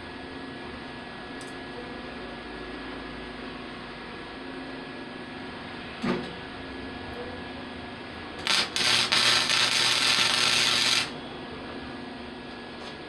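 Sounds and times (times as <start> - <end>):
welding arc hissing: 8.4 - 11.2
welding arc strike: 8.4 - 11.2.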